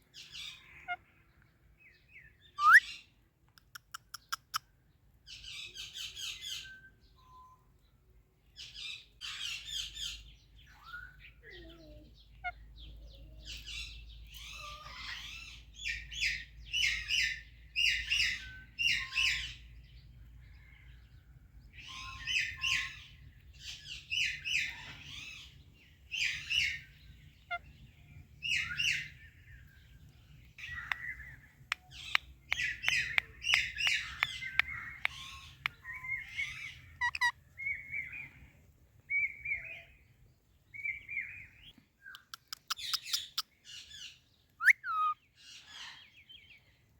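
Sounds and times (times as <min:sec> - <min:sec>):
parakeet chirps and squawks: 0:02.6 - 0:03.0, 0:13.5 - 0:19.6, 0:21.8 - 0:25.6, 0:30.6 - 0:38.0, 0:42.2 - 0:44.0, 0:44.6 - 0:46.0
sharp clicks: 0:03.5 - 0:04.6, 0:30.8 - 0:35.8, 0:42.1 - 0:43.3.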